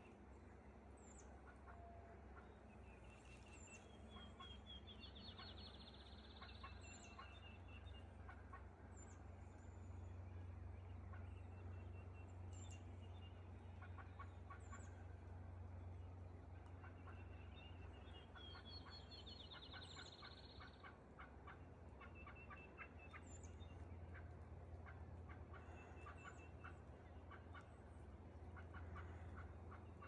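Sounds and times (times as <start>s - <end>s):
turkey hens clucking: 1.4s - 2.6s, 13.4s - 15.1s, 16.5s - 30.0s.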